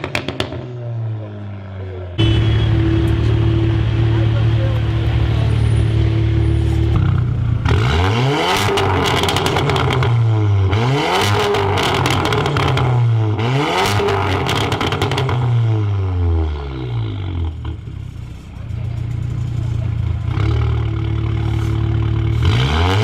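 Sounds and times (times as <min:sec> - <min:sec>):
car engine revving: 0:00.0 - 0:23.0
exhaust crackle: 0:01.9 - 0:10.8, 0:16.7 - 0:23.0.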